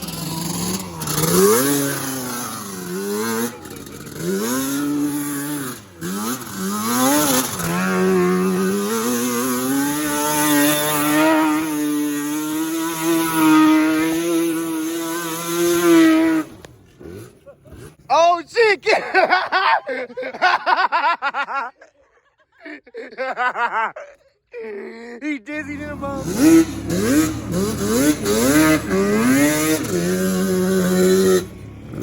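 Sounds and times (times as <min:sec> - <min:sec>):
off-road vehicle engine revving: 0:00.0 - 0:18.3, 0:25.5 - 0:32.0.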